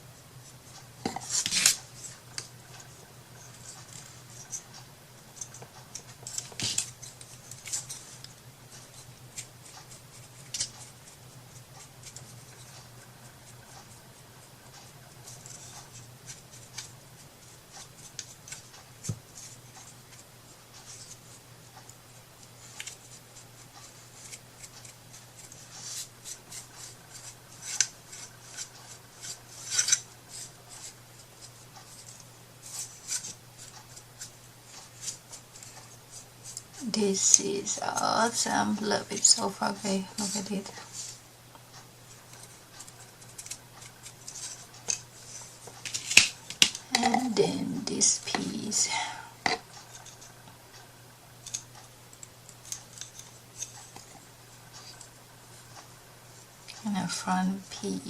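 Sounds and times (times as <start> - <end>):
scratching and rubbing on paper: 22.6 - 36.6.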